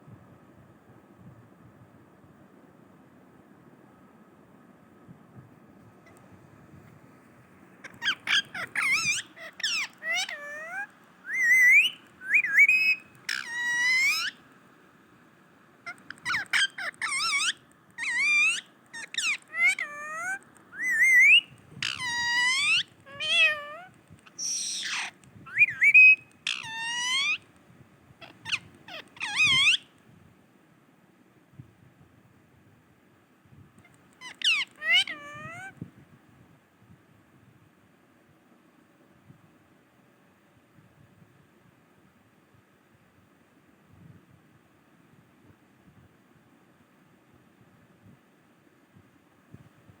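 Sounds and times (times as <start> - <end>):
parrot squeaking and squawking: 7.8 - 14.4, 15.9 - 27.4, 28.2 - 29.9, 33.8 - 35.8.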